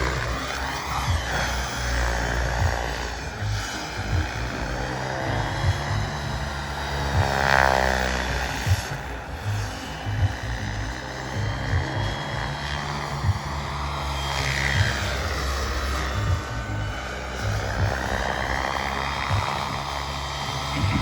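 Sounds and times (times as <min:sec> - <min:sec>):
helicopter rotor noise: 0:00.0 - 0:21.0
turbine whine: 0:00.0 - 0:21.0.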